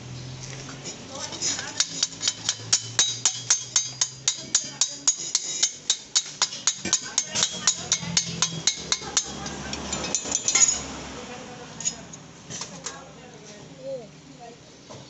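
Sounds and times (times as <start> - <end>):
hammer striking steel: 1.5 - 10.9.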